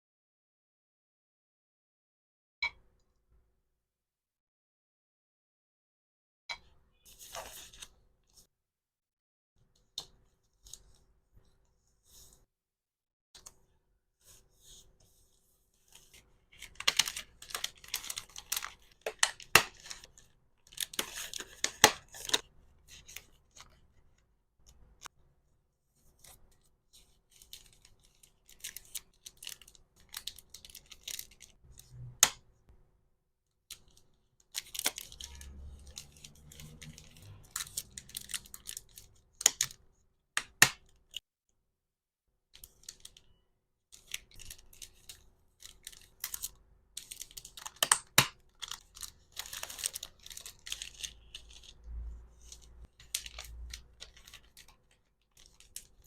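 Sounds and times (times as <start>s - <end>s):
packaging crinkling and tearing: 16.5s - 23.8s, 27.3s - 31.6s, 33.8s - 39.7s, 44.0s - 56.0s.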